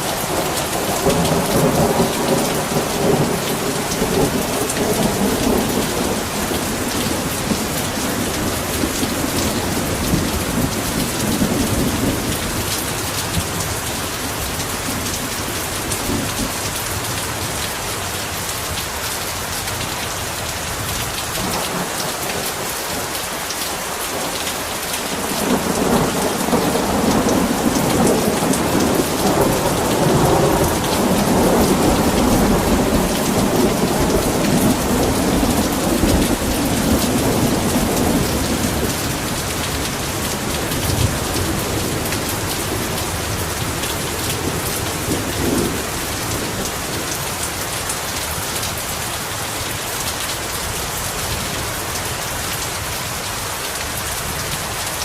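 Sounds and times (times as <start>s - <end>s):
heavy rain pouring: 0.0s - 55.0s
rolling thunder: 25.2s - 47.2s.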